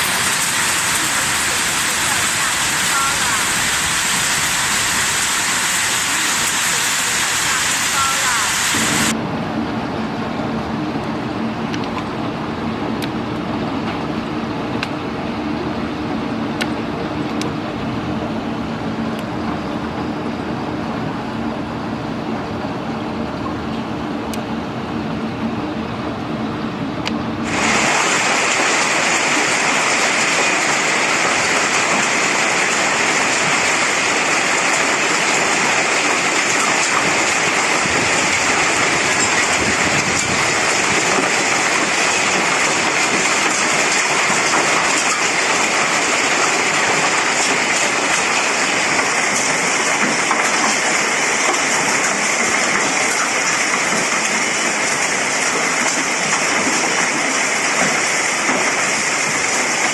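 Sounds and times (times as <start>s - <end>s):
heavy rain pouring: 0.0s - 9.2s, 27.4s - 59.9s.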